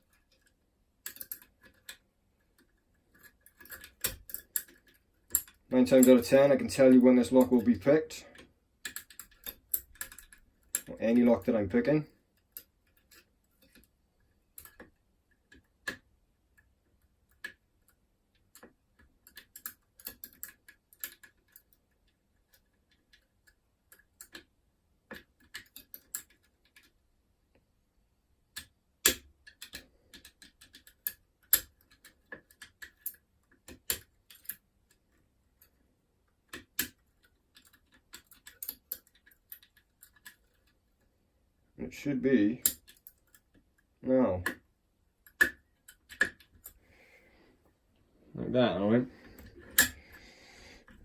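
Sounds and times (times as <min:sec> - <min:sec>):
lock picking metallic clicks: 0:00.0 - 0:10.9, 0:17.3 - 0:21.8, 0:25.1 - 0:26.9, 0:28.5 - 0:35.8, 0:36.5 - 0:40.7, 0:42.6 - 0:43.6, 0:45.2 - 0:46.8, 0:49.4 - 0:50.1.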